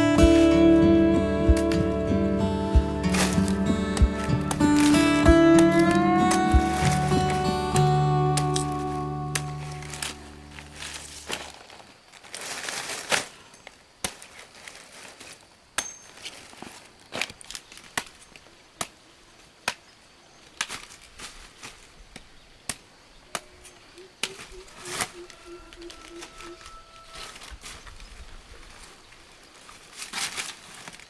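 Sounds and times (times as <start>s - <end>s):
low pulsed calls: 0.0s - 11.1s
blade chopping stalk: 1.5s - 2.0s, 2.8s - 11.3s.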